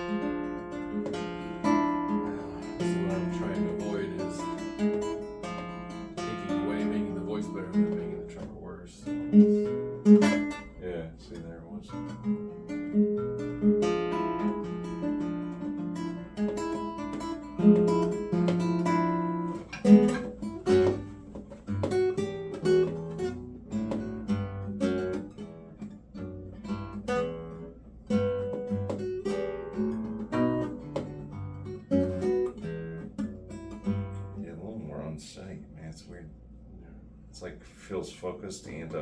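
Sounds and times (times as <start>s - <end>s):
guitar strummed chords: 0.0s - 34.4s
guitar picked notes: 0.0s - 34.8s.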